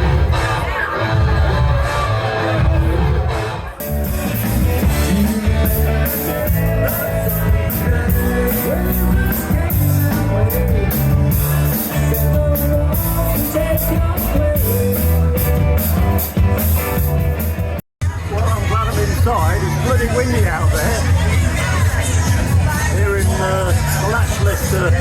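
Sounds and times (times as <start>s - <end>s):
live rock band: 0.0s - 25.0s
person singing: 4.9s - 16.3s.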